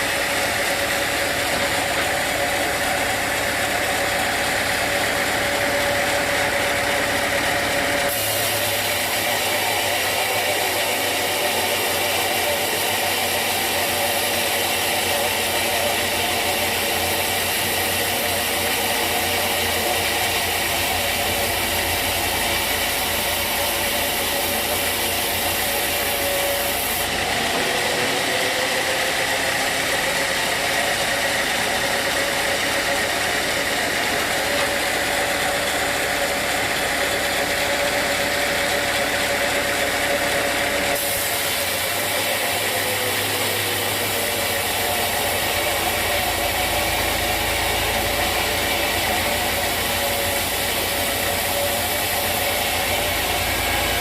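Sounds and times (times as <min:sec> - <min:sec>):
sawmill machinery humming: 0:00.0 - 0:54.0.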